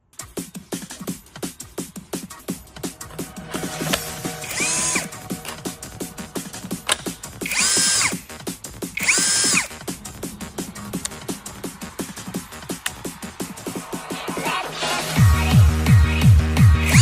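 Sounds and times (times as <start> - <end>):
electronic music with steady beat: 0.0 - 17.0
cordless drill motor whining: 4.4 - 5.1, 6.8 - 8.2, 9.0 - 9.8.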